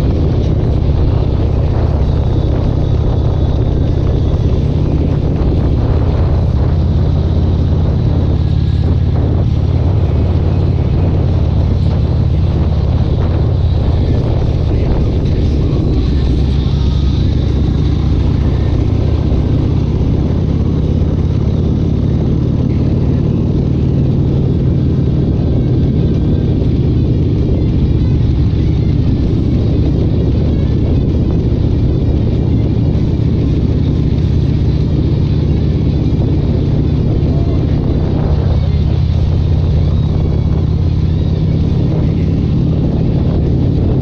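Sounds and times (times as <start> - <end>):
engine running steadily: 0.0 - 44.0.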